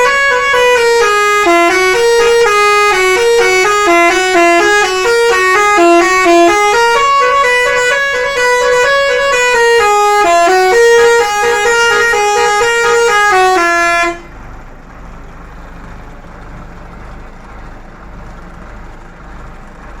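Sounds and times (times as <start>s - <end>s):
musical bus horn tune: 0.0s - 14.4s.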